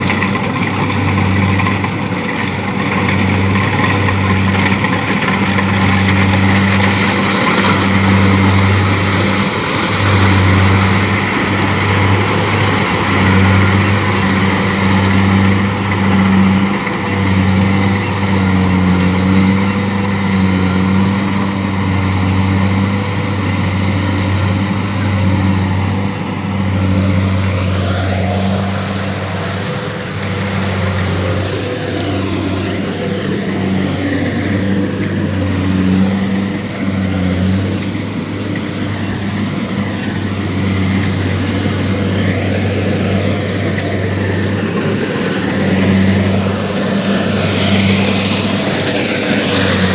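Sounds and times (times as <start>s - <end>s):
combine harvester engine drone: 0.0s - 49.9s
rising mechanical whine: 21.7s - 49.9s.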